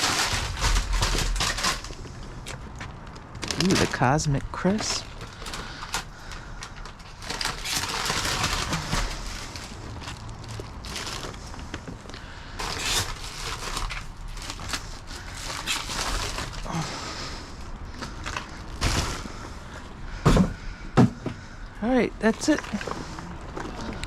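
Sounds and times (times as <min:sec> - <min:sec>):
bags rustling and crinkling: 0:00.0 - 0:20.0, 0:22.2 - 0:24.0
knocks and clunks: 0:20.2 - 0:21.4.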